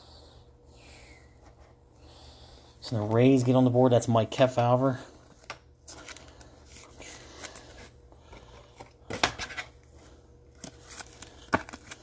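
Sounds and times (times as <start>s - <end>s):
trading cards rustling: 5.3s - 9.7s, 10.5s - 12.0s.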